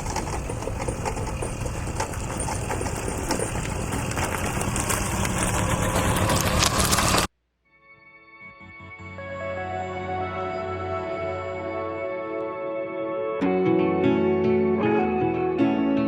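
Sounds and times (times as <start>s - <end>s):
road and wind noise: 0.0s - 7.3s
vehicle engine running: 0.0s - 7.3s.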